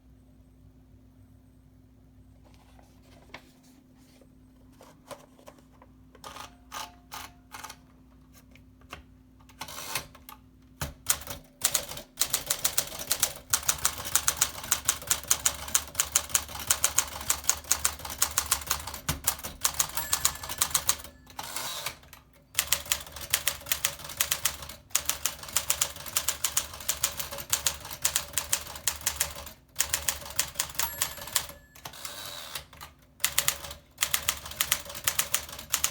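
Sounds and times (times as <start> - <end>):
manual typewriter typing: 6.2 - 7.9, 9.5 - 35.9.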